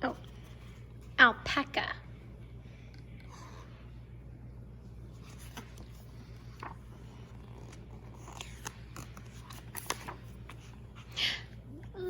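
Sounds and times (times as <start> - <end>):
steady low hum: 0.0 - 12.0
book pages handled and turned: 4.8 - 11.2.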